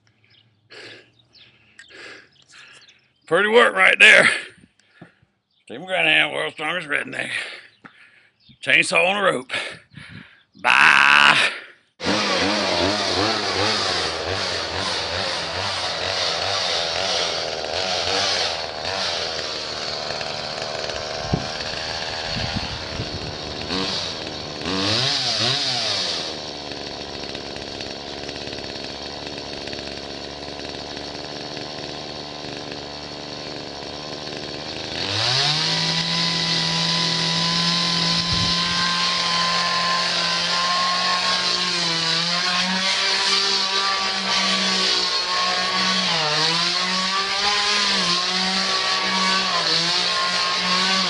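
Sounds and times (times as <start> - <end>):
chainsaw engine revving: 10.7 - 51.0.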